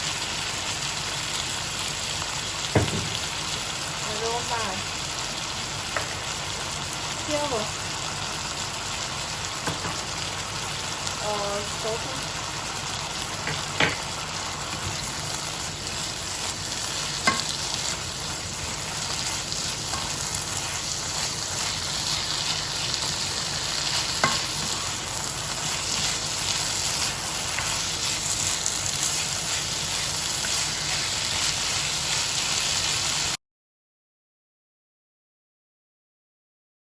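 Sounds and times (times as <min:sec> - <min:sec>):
fried rice sizzling in a pan: 0:00.0 - 0:33.4
sharp knocks on a pan: 0:02.7 - 0:03.1, 0:13.5 - 0:14.0, 0:17.2 - 0:17.5.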